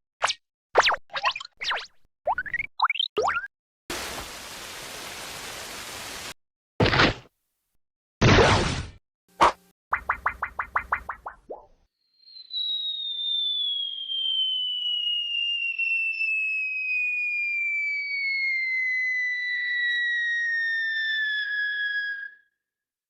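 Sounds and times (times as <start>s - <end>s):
cartoon falling whistle: 12.0s - 22.6s.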